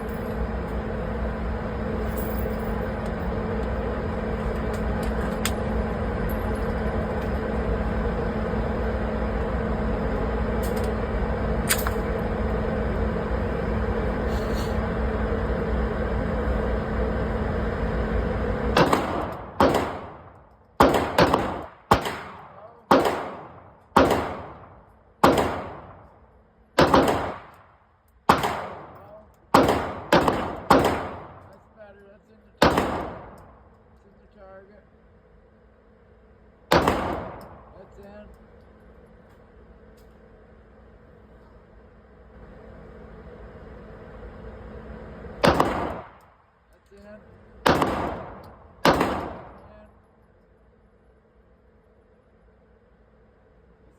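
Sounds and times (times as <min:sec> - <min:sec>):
steady low hum: 0:00.0 - 0:53.9
airsoft gun shots: 0:18.7 - 0:20.2, 0:20.8 - 0:24.6, 0:25.2 - 0:26.0, 0:26.8 - 0:27.6, 0:28.3 - 0:31.4, 0:32.6 - 0:33.4, 0:36.7 - 0:37.6, 0:45.4 - 0:46.2, 0:47.6 - 0:49.6.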